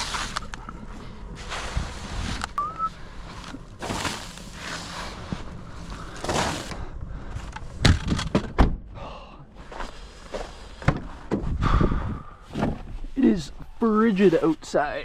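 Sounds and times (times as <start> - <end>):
scraping or crunching noise: 0.0 - 2.6, 3.2 - 8.3.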